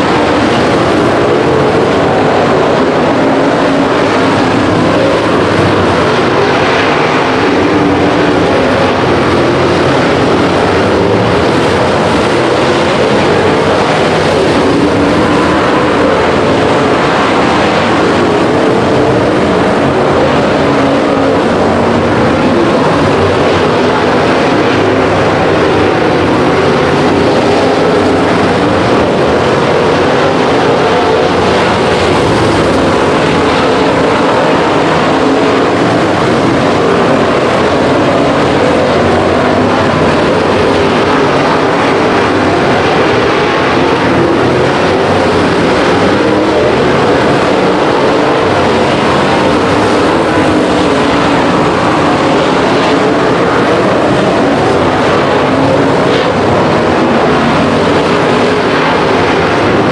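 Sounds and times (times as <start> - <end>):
race car engines roaring: 0.0 - 59.9.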